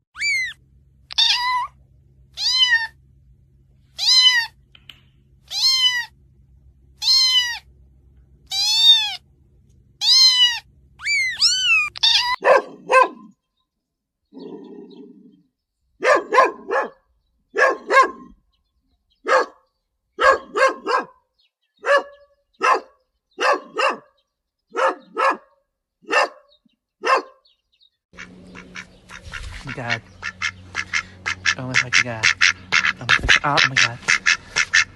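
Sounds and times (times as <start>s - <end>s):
cat meowing: 0.1s - 1.8s, 2.4s - 3.0s, 3.9s - 4.6s, 5.5s - 6.1s, 7.0s - 7.7s, 8.5s - 9.2s, 10.0s - 12.4s
low hum: 0.2s - 13.0s, 28.2s - 34.9s
animal short sharp calls: 28.2s - 34.9s.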